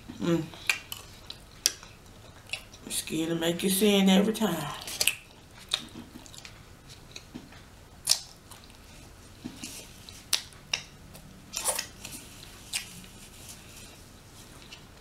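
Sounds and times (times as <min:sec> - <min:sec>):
person chewing: 0:00.1 - 0:02.9, 0:04.8 - 0:15.0.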